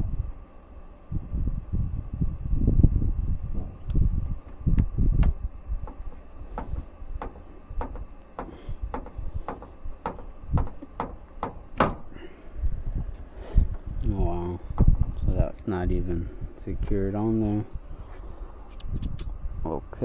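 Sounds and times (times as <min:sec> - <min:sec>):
dull thumps: 0:05.2 - 0:16.2.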